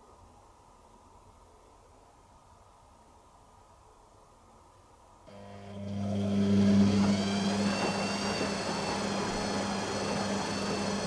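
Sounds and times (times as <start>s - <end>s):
washing machine mechanical hum: 4.9s - 11.0s.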